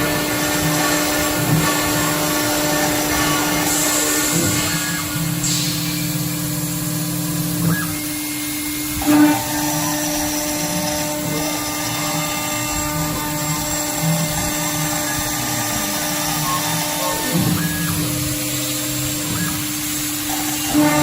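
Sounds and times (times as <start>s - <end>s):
router spindle whine: 0.0s - 21.0s.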